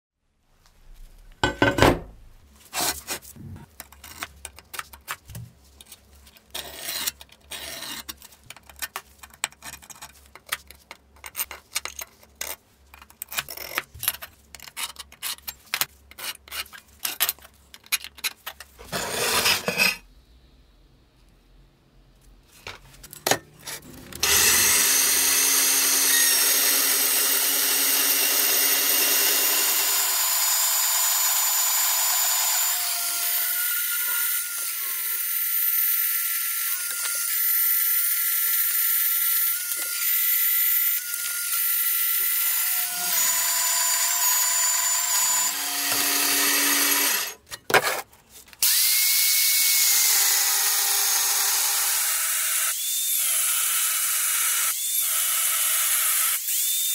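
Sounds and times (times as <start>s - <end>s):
power tool whining: 23.7s - 47.4s.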